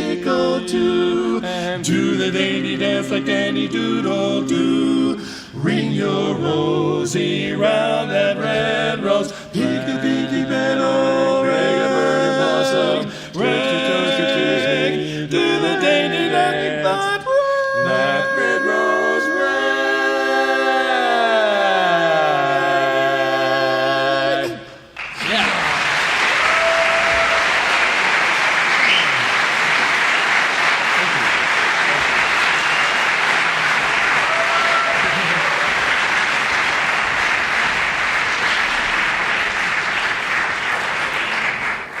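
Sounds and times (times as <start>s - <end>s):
barbershop quartet singing: 0.0s - 25.0s
crowd applauding: 25.0s - 42.0s.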